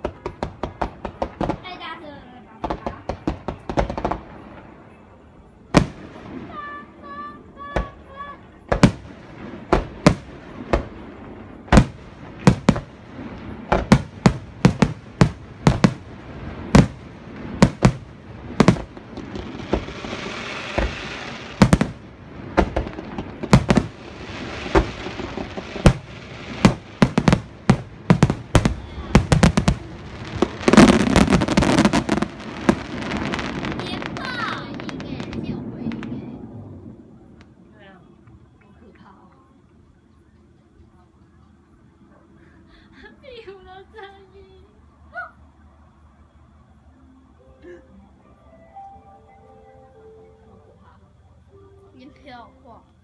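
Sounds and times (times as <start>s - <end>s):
fireworks banging: 0.0s - 5.0s, 5.7s - 42.0s
fireworks crackling: 0.0s - 44.9s.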